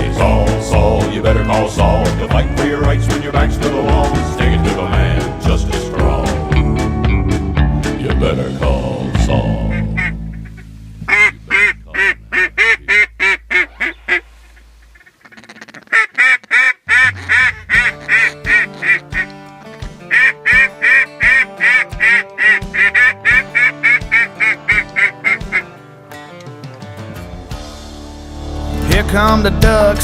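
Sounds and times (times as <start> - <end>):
song with bass and steady beat: 0.0 - 13.6, 17.3 - 25.7, 26.9 - 30.0
duck quacks: 9.7 - 25.8.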